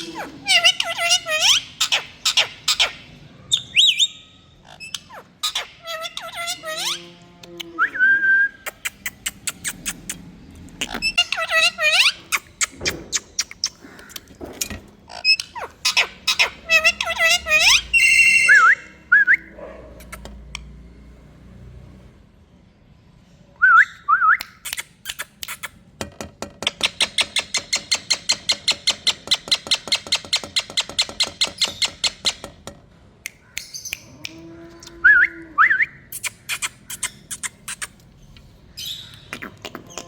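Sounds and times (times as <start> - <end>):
parakeet whistled notes: 17.6 - 19.4.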